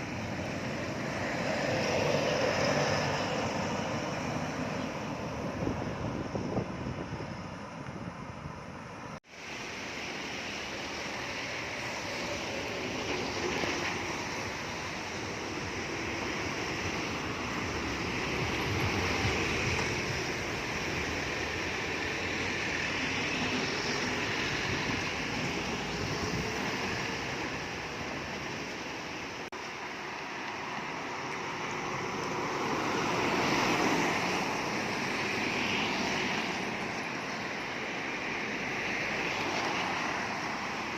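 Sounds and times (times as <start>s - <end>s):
heavy vehicle traffic: 0.0s - 40.9s.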